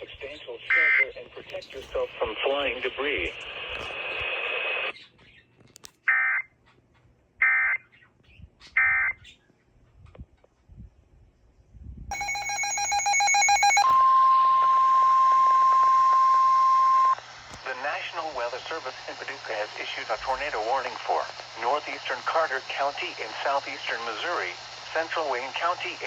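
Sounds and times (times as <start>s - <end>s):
digital data bursts: 12.1s - 14.6s
harsh buzzing data burst: 12.1s - 17.2s
steady warning alarm tone: 12.1s - 17.2s.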